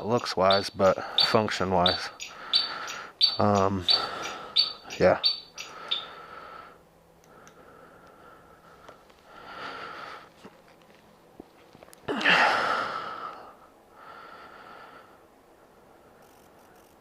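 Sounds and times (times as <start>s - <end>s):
person breathing out heavily: 2.2s - 3.2s, 3.9s - 4.9s, 5.6s - 10.4s, 12.1s - 15.4s.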